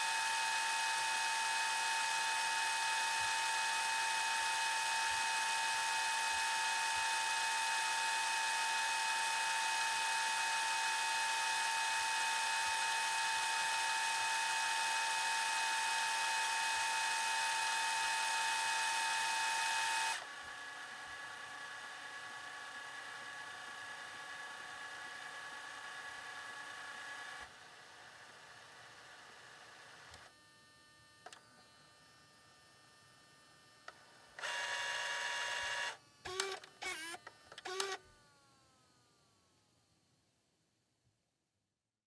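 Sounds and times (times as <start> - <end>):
tape motor whine: 34.4 - 38.0.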